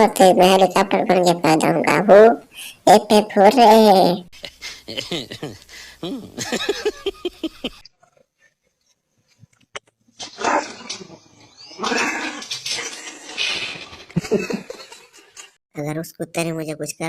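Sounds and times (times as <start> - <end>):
dog growling and barking: 10.2 - 14.2.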